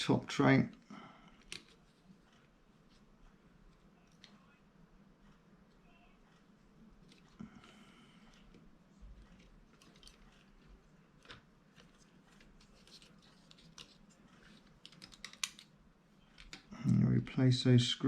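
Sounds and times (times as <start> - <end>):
plastic and metal parts clicking: 1.4 - 2.5, 9.2 - 16.7.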